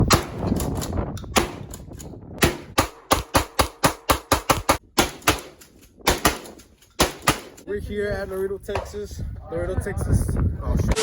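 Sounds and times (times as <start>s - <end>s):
gunshots: 2.4s - 7.6s.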